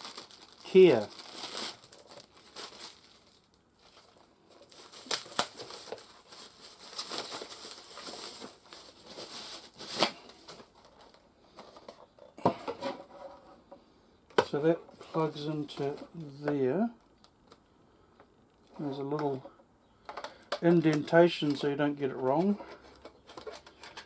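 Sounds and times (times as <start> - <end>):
packaging crinkling and rustling: 0.0 - 13.4, 20.1 - 24.0.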